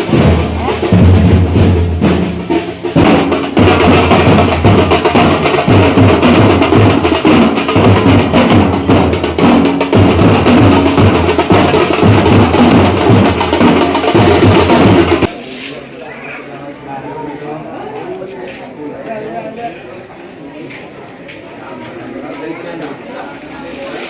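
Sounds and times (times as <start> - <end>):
drum-led percussion music: 0.0 - 15.5.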